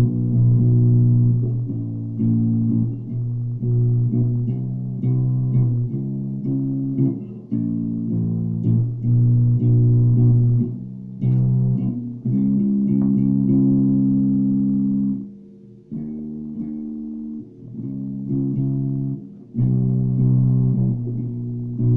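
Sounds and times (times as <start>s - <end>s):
electric bass plucked notes: 0.0s - 21.9s.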